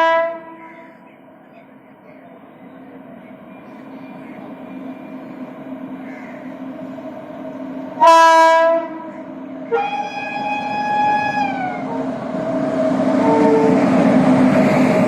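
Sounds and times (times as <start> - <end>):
locomotive horn blasts: 0.0 - 0.7, 8.0 - 9.1, 9.7 - 12.1, 13.2 - 14.0
locomotive rumble: 0.0 - 15.0.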